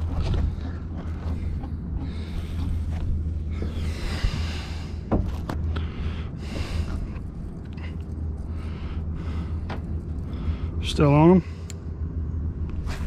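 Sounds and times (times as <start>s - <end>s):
boat engine humming: 0.0s - 13.0s.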